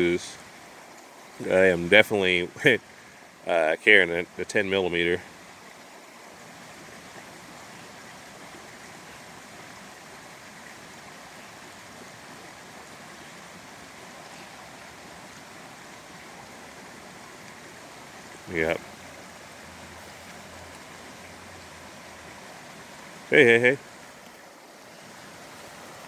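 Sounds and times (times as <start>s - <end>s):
small stream flowing: 0.0s - 26.0s.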